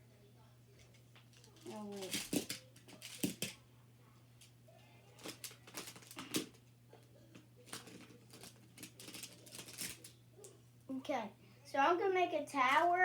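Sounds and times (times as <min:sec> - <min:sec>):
plastic building blocks clicking: 0:07.7 - 0:10.1.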